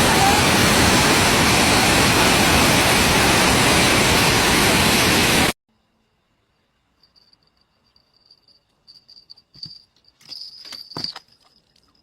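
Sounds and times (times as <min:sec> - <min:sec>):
loud rushing hiss: 0:00.0 - 0:05.6.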